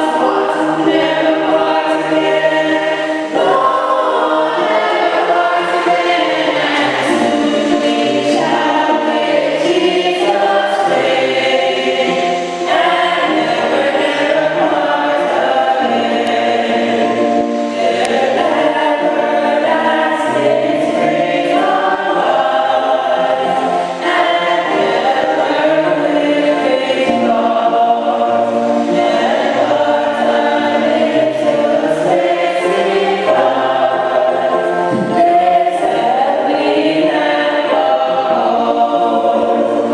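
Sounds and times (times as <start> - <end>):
choir singing a hymn: 0.0 - 39.9.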